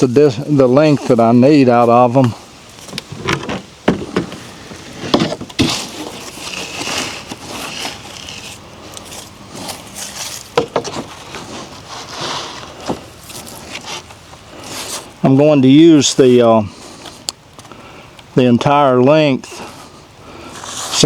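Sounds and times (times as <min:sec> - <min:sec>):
boards scraping and shuffling: 0:00.6 - 0:17.8, 0:19.4 - 0:21.0
wooden boards knocking: 0:03.1 - 0:04.4, 0:05.0 - 0:05.7, 0:10.6 - 0:11.1.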